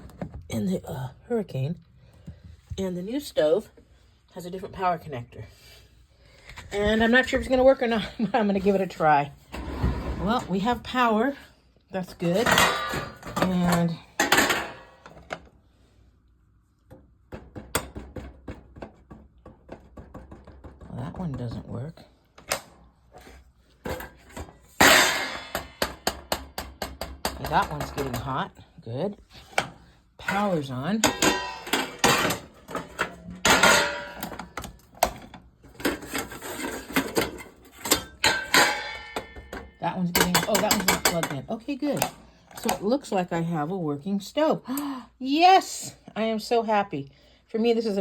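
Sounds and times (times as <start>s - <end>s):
metal clattering on stovetop: 30.3s - 41.4s.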